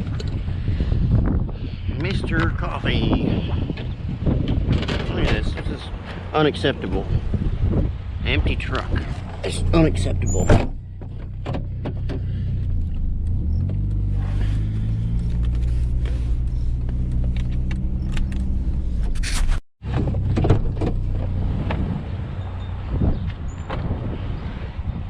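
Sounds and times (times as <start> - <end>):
road noise: 0.0 - 25.0
pickup truck engine: 4.2 - 23.8.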